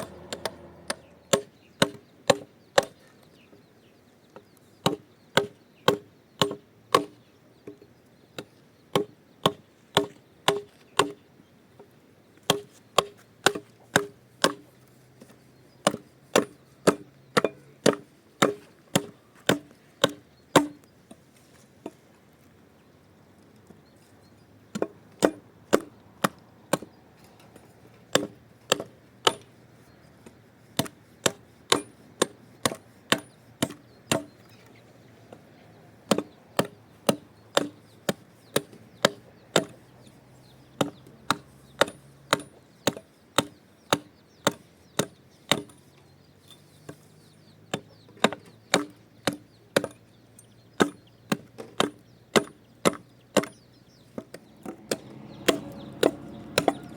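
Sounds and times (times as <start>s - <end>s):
chopping into wood: 0.0s - 3.0s, 4.8s - 7.2s, 8.9s - 11.2s, 12.5s - 14.6s, 15.8s - 20.8s, 24.7s - 26.9s, 28.1s - 29.5s, 30.8s - 34.3s, 36.1s - 39.8s, 40.8s - 45.8s, 47.7s - 50.0s, 50.8s - 53.6s, 54.2s - 56.9s.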